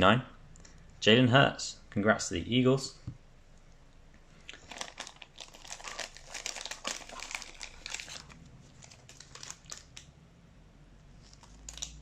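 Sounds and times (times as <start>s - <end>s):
thin plastic crinkling: 4.5s - 10.1s, 11.2s - 12.0s.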